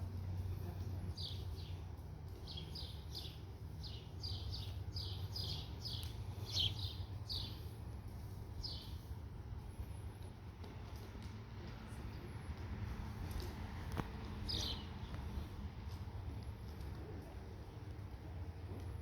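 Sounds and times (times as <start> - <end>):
bird chirping: 1.2 - 7.7, 8.6 - 9.0, 14.4 - 15.4.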